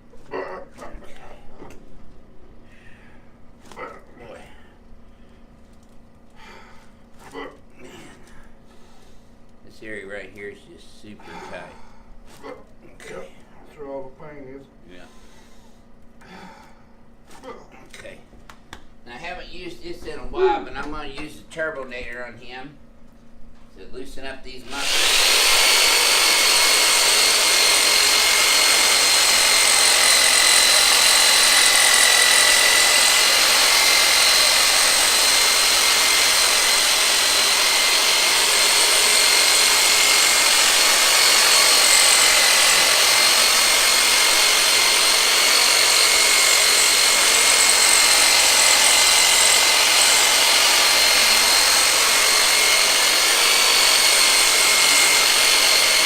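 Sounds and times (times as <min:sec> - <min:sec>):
power saw motor whine: 0:24.6 - 0:56.0.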